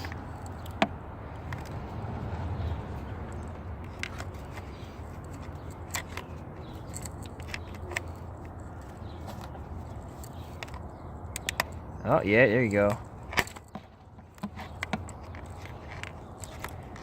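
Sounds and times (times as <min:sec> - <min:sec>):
pliers clicking and scraping metal: 0:03.3 - 0:11.8, 0:12.6 - 0:17.0.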